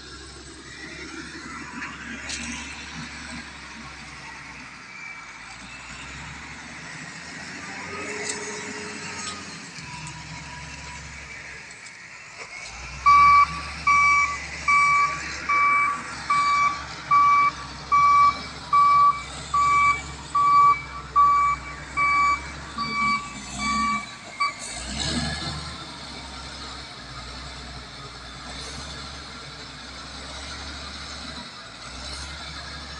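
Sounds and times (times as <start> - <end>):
diesel engine rumble: 0.0 - 32.9
reversing alarm beeping: 13.0 - 24.6.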